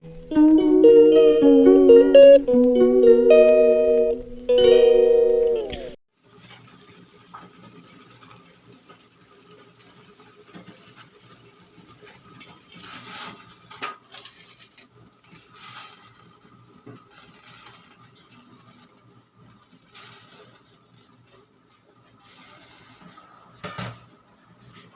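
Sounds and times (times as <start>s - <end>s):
rustling or scraping: 12.0s - 23.6s.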